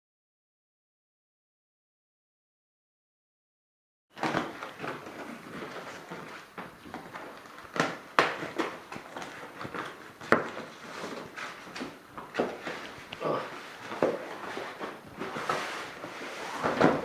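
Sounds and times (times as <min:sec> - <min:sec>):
rustling: 0:04.2 - 0:17.0.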